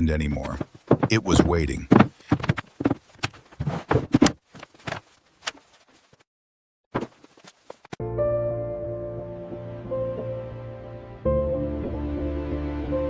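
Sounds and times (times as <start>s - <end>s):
knocks and thuds: 0.4s - 5.0s.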